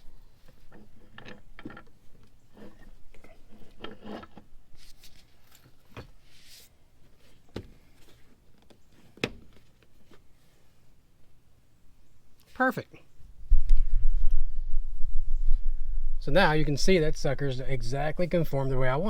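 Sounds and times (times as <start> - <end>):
rustling: 0.0 - 10.8.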